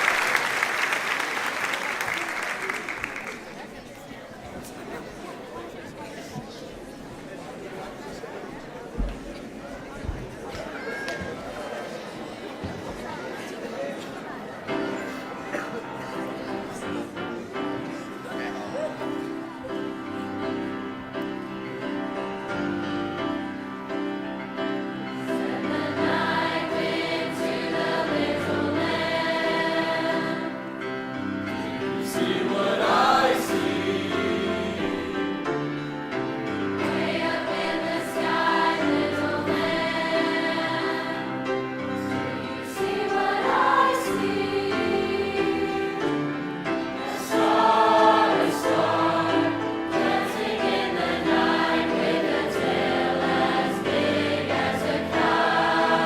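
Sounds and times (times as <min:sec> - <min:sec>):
choir singing: 0:14.7 - 0:56.0.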